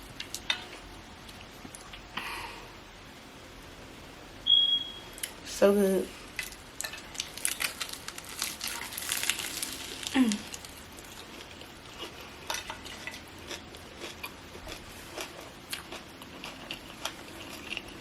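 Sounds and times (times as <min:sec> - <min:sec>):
crunchy chewing of sandwich: 0:07.0 - 0:18.0.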